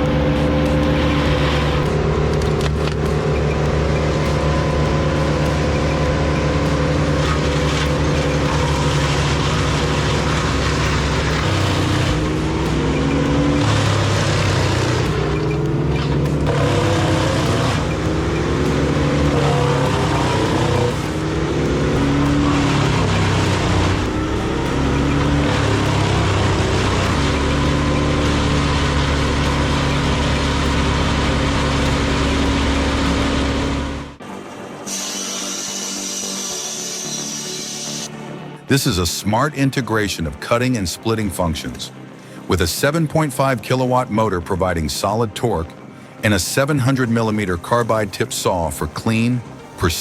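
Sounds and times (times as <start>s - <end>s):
heavy machine engine running: 0.0s - 38.3s.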